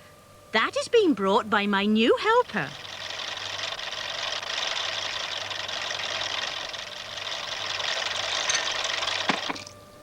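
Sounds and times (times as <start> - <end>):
small machine whirring: 2.0 - 10.0.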